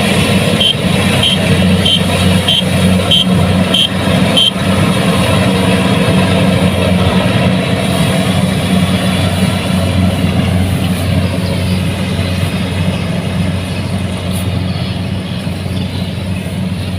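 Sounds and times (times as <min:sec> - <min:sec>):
combine harvester diesel engine: 0:00.0 - 0:16.9
high electronic beep: 0:00.6 - 0:04.6.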